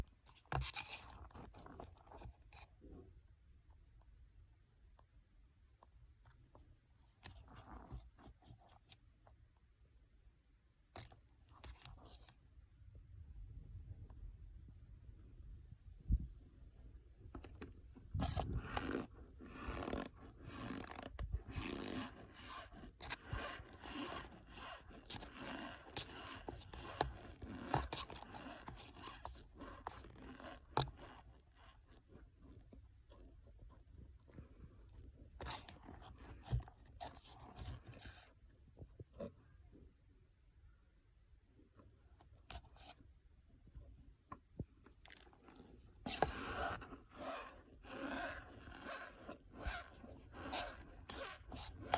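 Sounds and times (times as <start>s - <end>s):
cornstarch squeaking and crunching: 18.1s - 31.9s, 35.4s - 38.1s, 44.8s - 51.9s
cornstarch crunching and squeaking: 44.9s - 51.9s.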